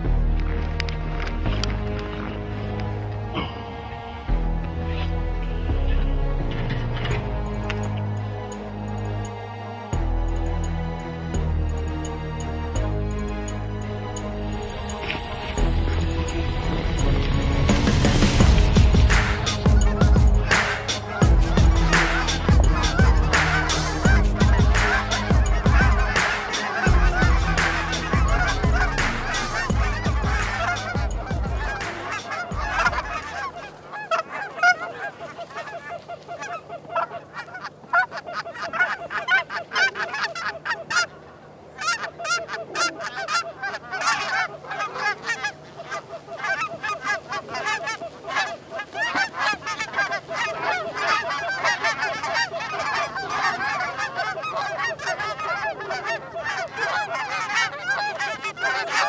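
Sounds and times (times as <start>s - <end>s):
geese honking: 1.1s - 8.6s, 14.4s - 59.0s
deep low rumble: 12.8s - 26.2s.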